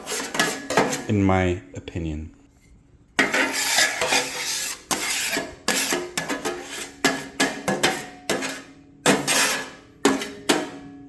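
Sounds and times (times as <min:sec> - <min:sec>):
scraper scraping griddle plate: 0:00.0 - 0:01.2, 0:03.2 - 0:10.8.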